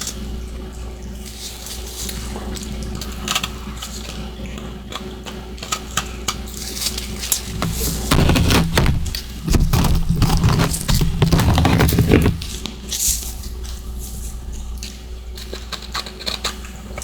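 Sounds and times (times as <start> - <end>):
chewing ice crunching: 1.5 - 12.8, 14.8 - 17.0.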